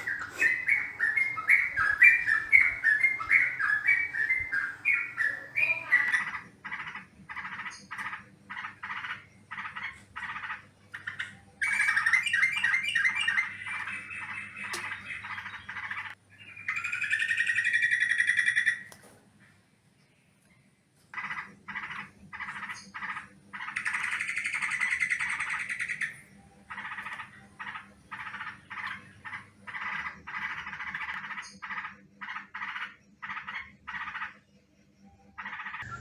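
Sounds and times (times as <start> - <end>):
harsh buzzy bird call: 0.0 - 6.1
bird chirping and chattering: 0.0 - 18.9, 21.2 - 36.0.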